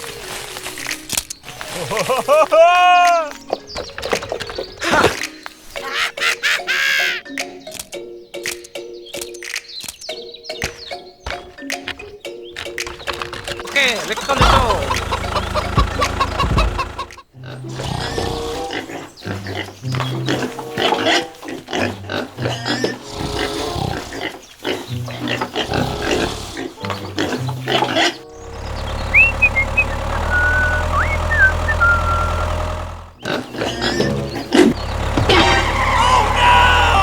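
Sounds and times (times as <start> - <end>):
pigs grunting and squealing: 1.6 - 7.4, 12.9 - 37.0.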